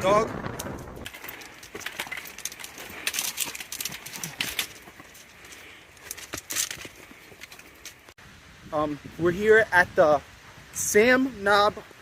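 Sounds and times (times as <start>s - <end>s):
footsteps on rocky dirt trail: 0.0s - 8.2s.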